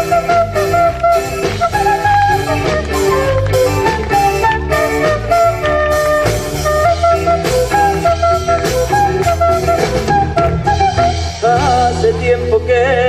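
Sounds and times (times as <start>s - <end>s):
band playing instrumental: 0.0s - 13.0s
person singing: 10.1s - 13.0s.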